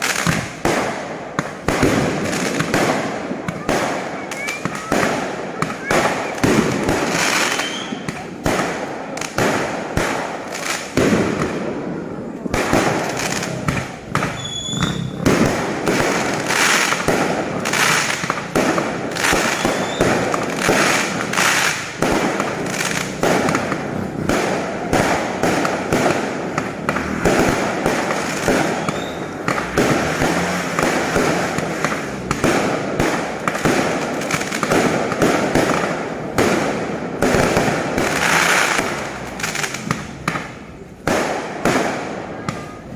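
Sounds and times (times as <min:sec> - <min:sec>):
fireworks bangs and crackles: 0:00.0 - 0:42.9
firework whistles: 0:04.1 - 0:08.2, 0:14.2 - 0:18.3, 0:19.1 - 0:21.9, 0:28.0 - 0:31.0.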